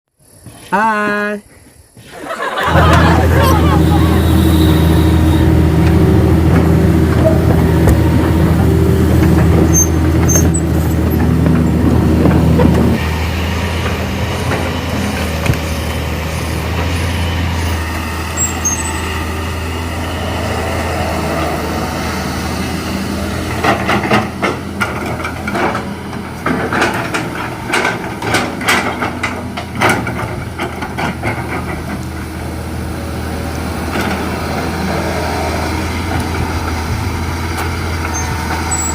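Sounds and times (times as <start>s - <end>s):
excavator diesel engine running: 2.4s - 38.9s
sharp metal clanks and knocks: 23.6s - 32.0s.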